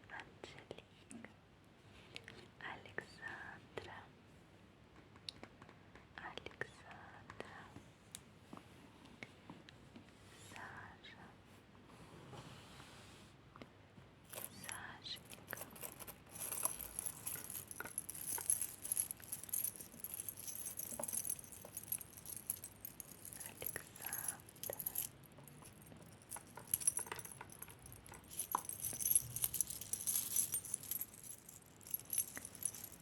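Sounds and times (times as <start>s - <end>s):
metal jewelry jingling: 14.3s - 33.0s.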